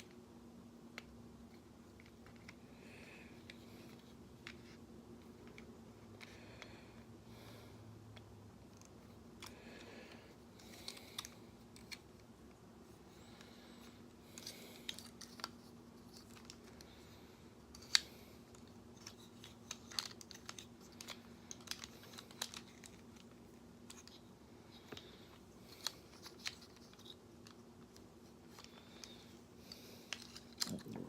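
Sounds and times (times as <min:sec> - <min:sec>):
faint steady hum: 0:00.0 - 0:31.0
plastic toy parts clicking: 0:17.7 - 0:24.2, 0:25.7 - 0:31.0.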